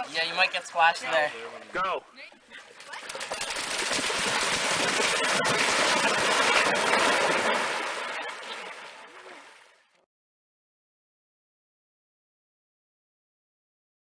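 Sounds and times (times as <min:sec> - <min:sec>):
sharp water drips: 0:02.8 - 0:09.7
rushing splashing water: 0:02.9 - 0:09.8.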